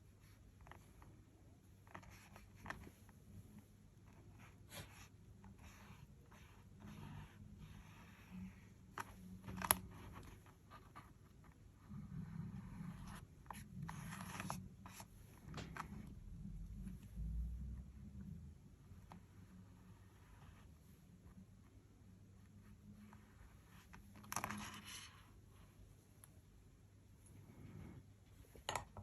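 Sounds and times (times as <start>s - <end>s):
paintbrush scratching on paper: 1.8s - 3.4s, 4.0s - 18.0s, 19.0s - 21.4s.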